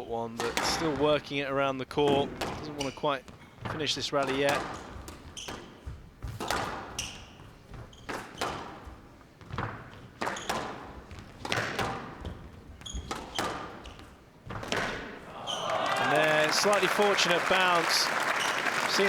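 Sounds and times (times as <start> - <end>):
shoe squeaks: 2.1 - 8.9, 9.6 - 11.3, 12.7 - 14.6
squash ball knocks: 3.6 - 15.2.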